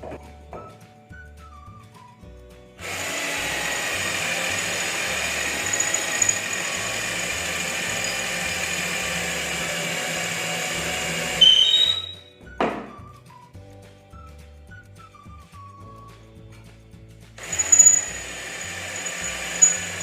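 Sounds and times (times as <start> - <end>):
cordless drill drilling: 2.8 - 12.2, 17.4 - 20.0.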